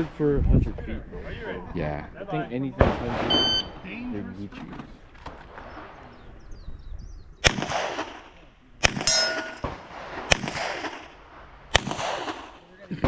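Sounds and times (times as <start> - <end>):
handgun shots: 8.8 - 11.1, 11.7 - 12.6
metallic ring: 9.1 - 9.6.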